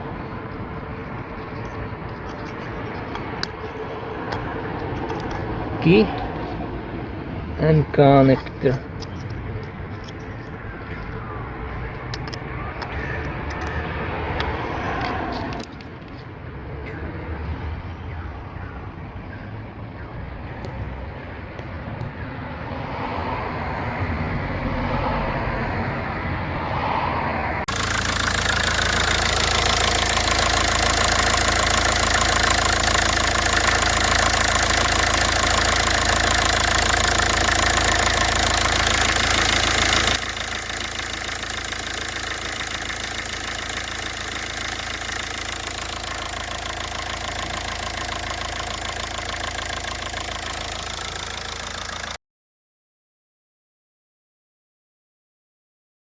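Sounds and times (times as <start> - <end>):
car engine idling: 0.0 - 16.2, 27.7 - 52.2.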